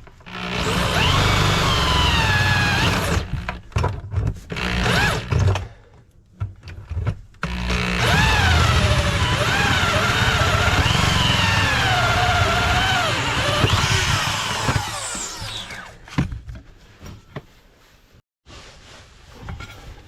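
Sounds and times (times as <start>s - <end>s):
electric drill boring: 0.3s - 3.5s, 4.5s - 5.3s, 7.4s - 16.0s.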